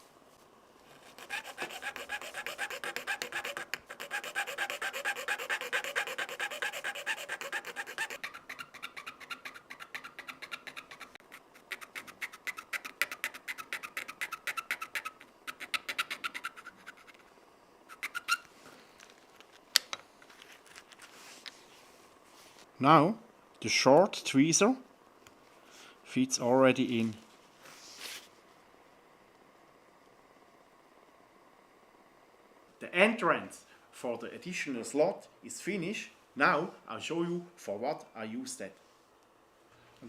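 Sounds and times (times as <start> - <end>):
hand tool rasping on plastic: 1.0 - 17.2.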